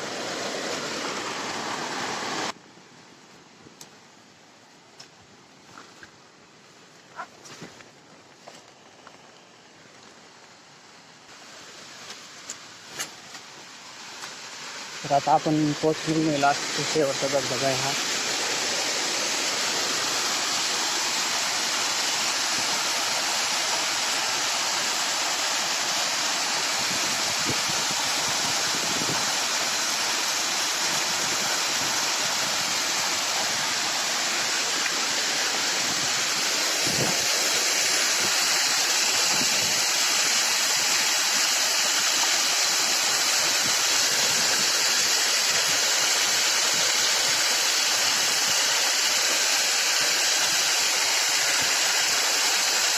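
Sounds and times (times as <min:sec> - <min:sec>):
waterfall rushing: 0:00.0 - 0:02.6, 0:13.5 - 0:52.9.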